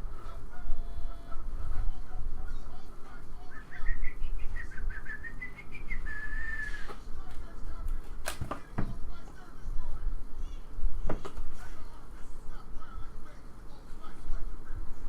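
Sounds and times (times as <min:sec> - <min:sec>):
person whistling: 0:03.7 - 0:06.9.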